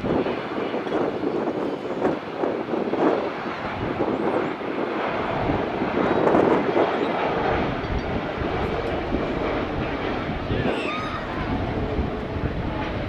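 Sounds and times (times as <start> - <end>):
jet engine rumble: 0.0 - 13.0.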